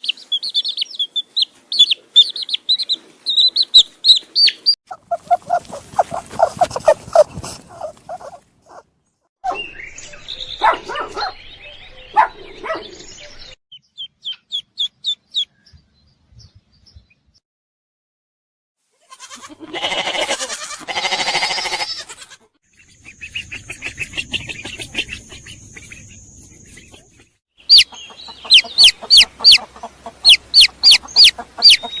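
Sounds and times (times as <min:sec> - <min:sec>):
birds chirping and clucking: 0:00.0 - 0:08.8, 0:10.4 - 0:15.8, 0:22.7 - 0:32.0
harsh animal call: 0:04.9 - 0:08.8.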